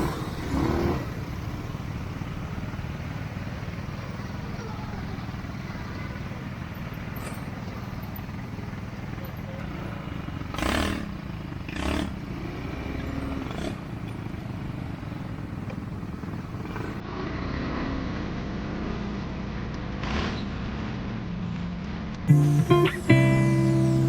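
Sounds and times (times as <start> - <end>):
atv engine running: 0.0 - 17.0, 22.3 - 24.0.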